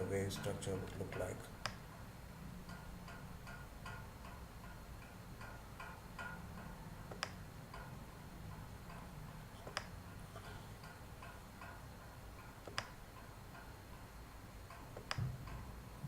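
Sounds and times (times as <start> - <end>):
clock ticking: 0.0 - 16.0
low steady hum: 0.0 - 16.0
sharp clicks: 0.4 - 2.0, 2.7 - 8.0, 8.9 - 10.0, 10.8 - 13.7, 14.7 - 15.6.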